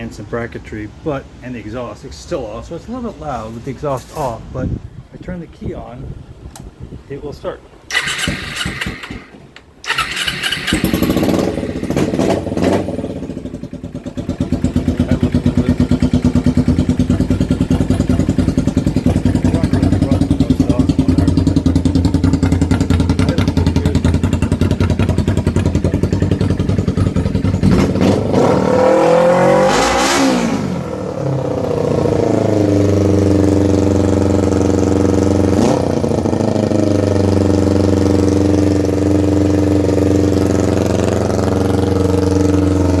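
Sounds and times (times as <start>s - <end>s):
motorcycle engine starting and idling: 7.9s - 43.0s.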